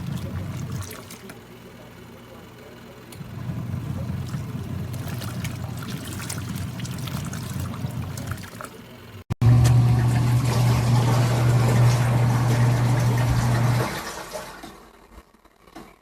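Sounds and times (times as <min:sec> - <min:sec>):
water trickling and splashing: 0:00.0 - 0:01.4, 0:03.4 - 0:08.9
water churning: 0:00.0 - 0:01.5, 0:03.2 - 0:09.2
washing machine motor hum: 0:00.0 - 0:15.2.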